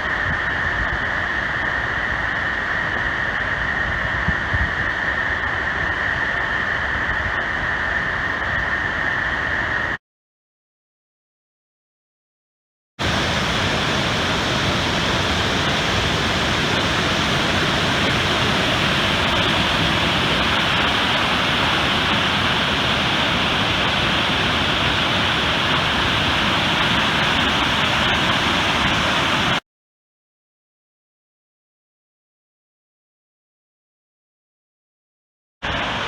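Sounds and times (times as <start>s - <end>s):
rush of falling water: 13.0s - 29.6s, 35.6s - 36.0s.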